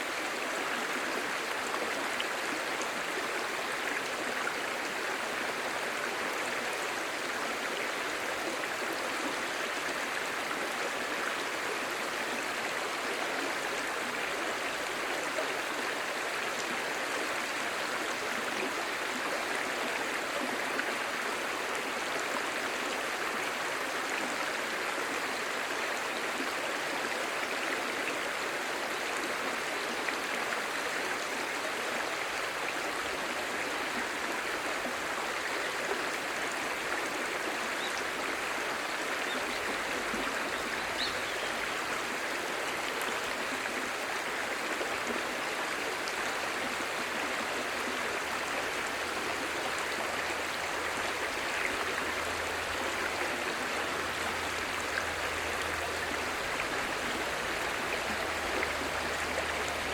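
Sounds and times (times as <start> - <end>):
stream babbling over stones: 0.0 - 59.9.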